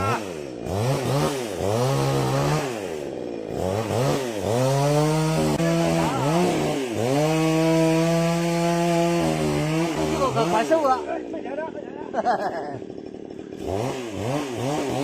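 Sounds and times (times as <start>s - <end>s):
chainsaw engine revving: 0.0s - 15.0s.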